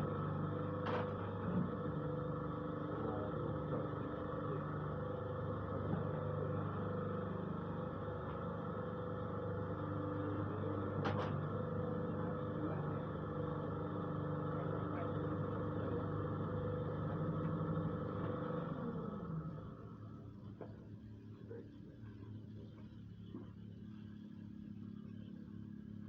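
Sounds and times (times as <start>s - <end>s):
machine motor running: 0.0s - 20.4s.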